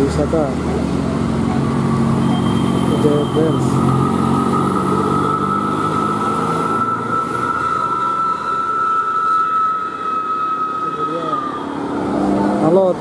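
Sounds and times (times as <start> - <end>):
bus engine running hard: 0.0 - 8.8
high-pitched whine: 0.0 - 13.0.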